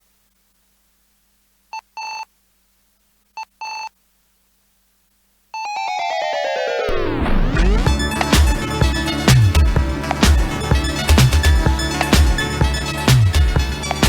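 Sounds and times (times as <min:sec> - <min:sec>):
electronic telephone ring: 0:05.6 - 0:07.0
electronic intro music: 0:05.6 - 0:14.0.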